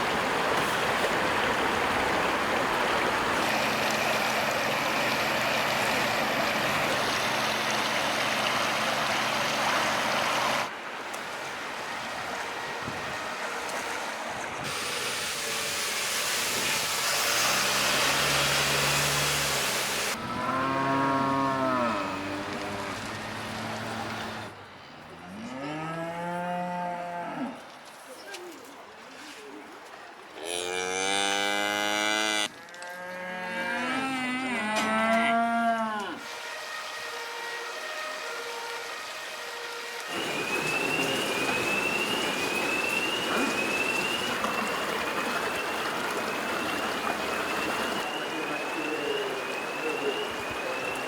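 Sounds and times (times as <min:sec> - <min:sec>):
cattle mooing: 0:20.3 - 0:23.0, 0:30.4 - 0:36.2.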